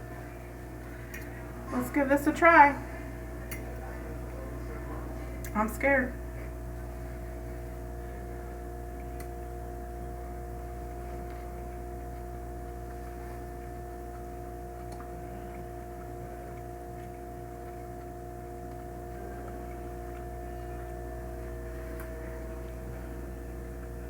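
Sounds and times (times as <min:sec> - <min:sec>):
steady low hum with tones: 0:00.0 - 0:24.0.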